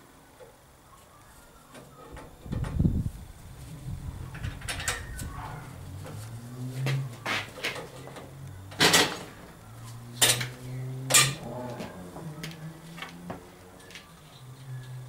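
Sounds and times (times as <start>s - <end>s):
steady low hum: 0.0s - 15.0s
metal tools clinking and knocking: 10.2s - 11.4s.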